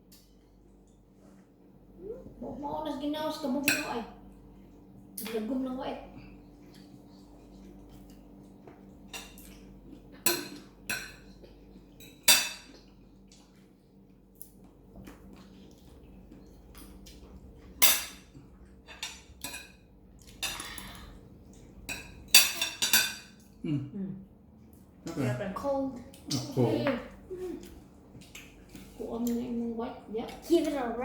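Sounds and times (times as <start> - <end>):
cutlery and dishes clinking: 10.2 - 12.8, 21.9 - 23.4.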